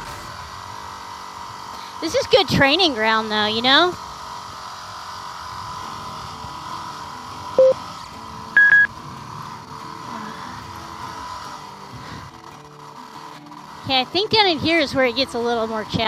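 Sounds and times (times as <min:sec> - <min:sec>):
motorcycle engine running: 0:00.0 - 0:16.0
short electronic beeps: 0:07.6 - 0:07.8, 0:08.6 - 0:08.9.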